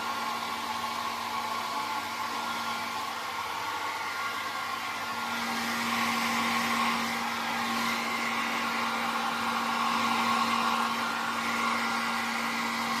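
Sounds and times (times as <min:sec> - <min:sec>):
hair dryer blowing: 0:00.0 - 0:13.0.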